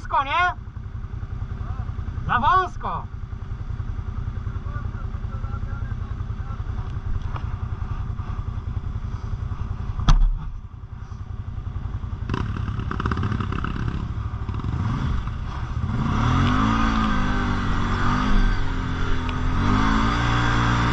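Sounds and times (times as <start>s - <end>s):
sharp knock: 10.0s - 10.5s
quad bike engine revving: 11.7s - 20.9s.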